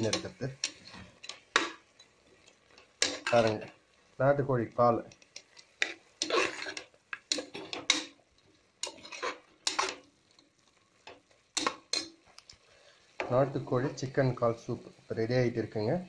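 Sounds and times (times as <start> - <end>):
spoon stirring in cooking pot: 0.0 - 4.0, 5.1 - 13.4.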